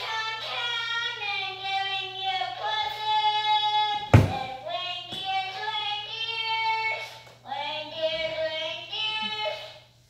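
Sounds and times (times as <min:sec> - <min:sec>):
child singing: 0:00.0 - 0:09.8
sharp thump: 0:04.1 - 0:04.5.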